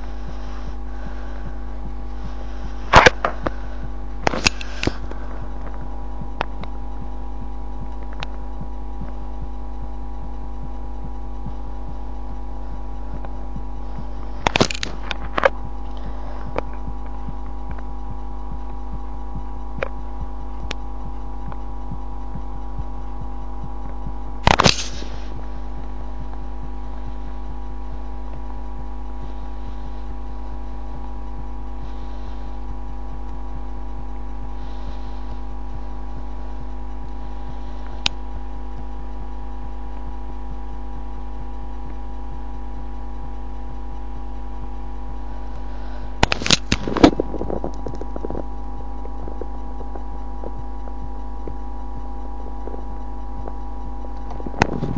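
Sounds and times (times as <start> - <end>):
muffled heartbeat: 0.0 - 54.9
steady electrical hum: 0.0 - 54.9
loud crackles: 2.2 - 9.5, 23.8 - 32.6, 45.3 - 50.2.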